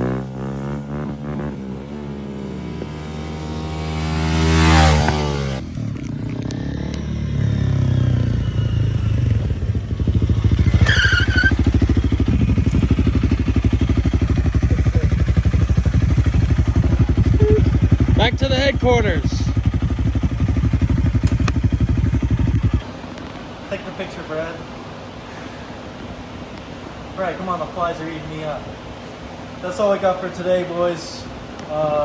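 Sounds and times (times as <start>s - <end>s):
motorcycle engine revving: 0.0s - 22.9s.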